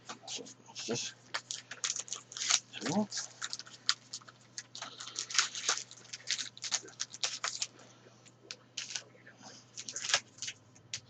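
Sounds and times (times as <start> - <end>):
wrappers crinkling and rustling: 1.3 - 7.8, 8.8 - 9.1, 9.7 - 11.0.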